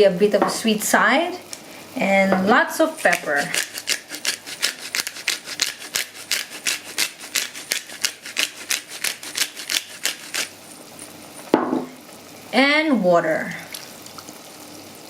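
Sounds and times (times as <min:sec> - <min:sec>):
pepper mill grinding: 0:02.9 - 0:11.5.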